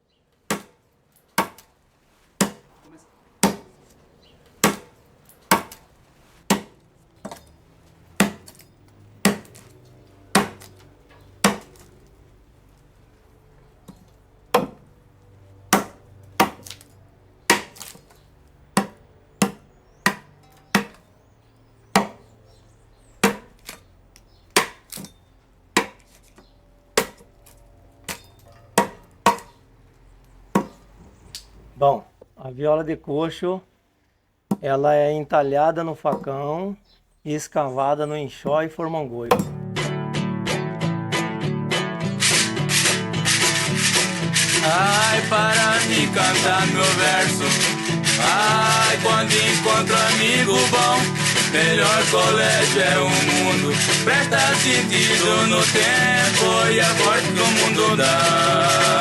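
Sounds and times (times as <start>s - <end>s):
blade chopping wood: 0.5s - 1.7s, 2.4s - 2.8s, 3.4s - 3.8s, 4.5s - 12.2s, 13.8s - 14.9s, 15.7s - 21.1s, 21.8s - 22.6s, 23.2s - 25.2s, 25.8s - 27.4s, 28.0s - 29.6s, 30.5s - 31.5s, 39.3s - 39.6s.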